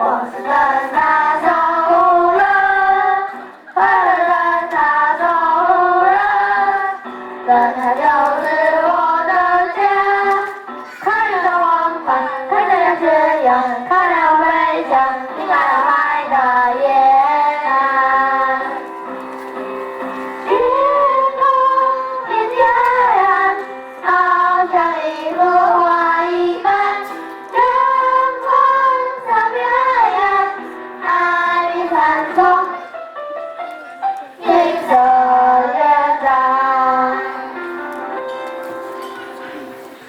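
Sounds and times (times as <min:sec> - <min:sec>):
instrumental accompaniment: 0:00.0 - 0:40.0
person singing: 0:34.3 - 0:39.9.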